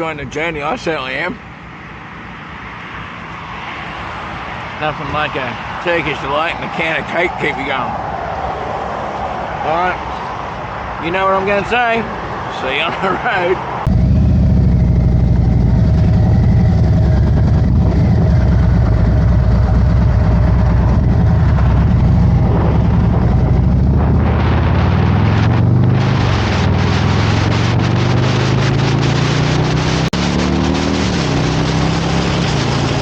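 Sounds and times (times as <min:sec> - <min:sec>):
rushing wind noise: 0:03.6 - 0:33.0
motorcycle engine running: 0:13.9 - 0:33.0.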